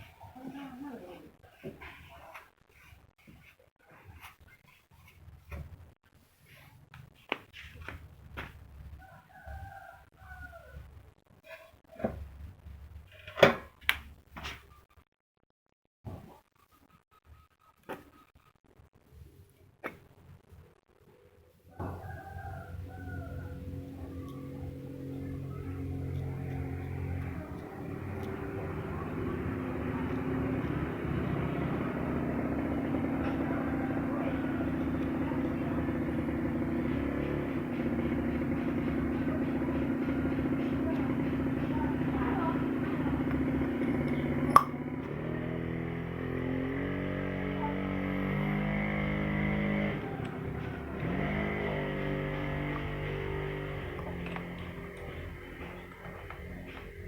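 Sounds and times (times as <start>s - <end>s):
held musical tones: 21.8s - 45.4s
diesel engine running: 21.8s - 57.0s.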